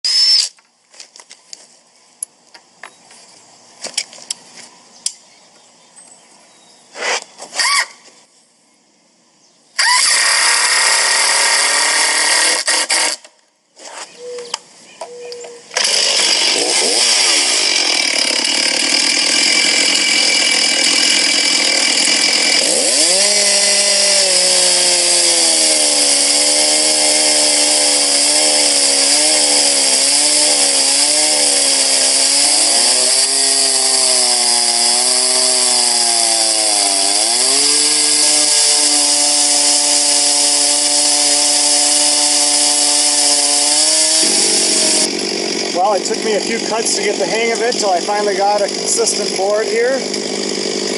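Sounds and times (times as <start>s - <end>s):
chainsaw cutting log: 7.0s - 8.0s, 9.8s - 13.3s, 15.7s - 50.9s.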